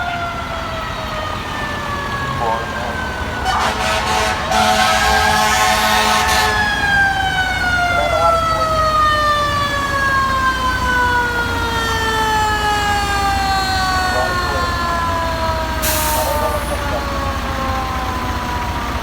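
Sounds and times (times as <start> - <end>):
fire truck siren winding: 0.0 - 19.0
rushing hiss: 15.8 - 17.0.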